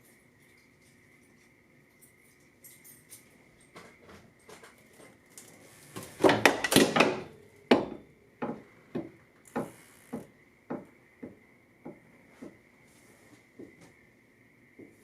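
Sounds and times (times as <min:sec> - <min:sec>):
hammer striking metal: 0:06.7 - 0:08.1.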